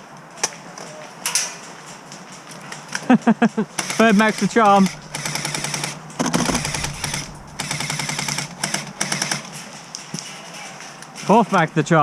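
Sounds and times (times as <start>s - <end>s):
airsoft gun firing bursts: 3.8s - 9.6s.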